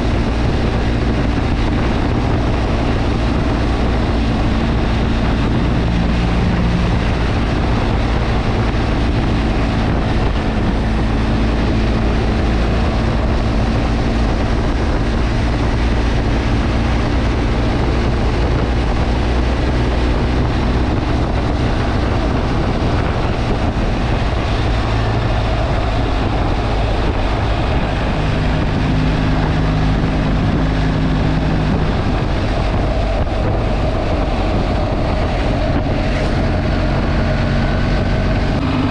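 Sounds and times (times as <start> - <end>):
motorcycle engine droning: 0.0 - 38.9
wind on microphone: 0.0 - 38.9.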